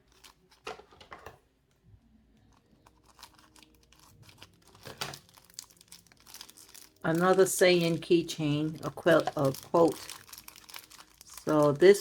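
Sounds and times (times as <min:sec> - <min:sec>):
packaging crinkling: 0:00.0 - 0:01.1, 0:02.4 - 0:12.0.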